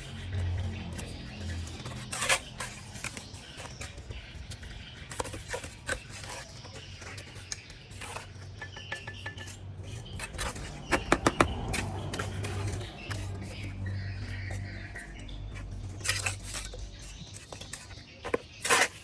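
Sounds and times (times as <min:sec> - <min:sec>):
hard objects clinking together: 0:05.1 - 0:13.3.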